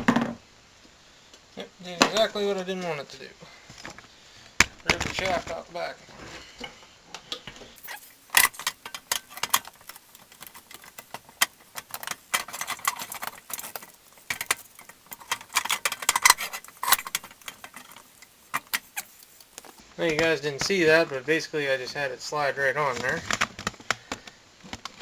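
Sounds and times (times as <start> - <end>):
metal parts clinking and knocking: 7.8 - 19.8.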